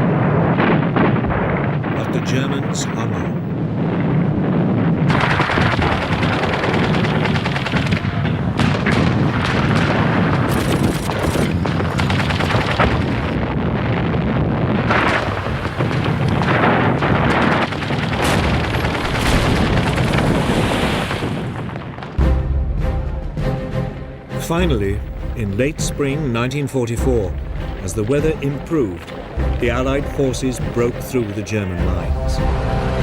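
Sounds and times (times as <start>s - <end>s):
booming explosions: 0.0s - 33.0s
rapid gunshots: 5.1s - 14.1s, 14.9s - 22.1s.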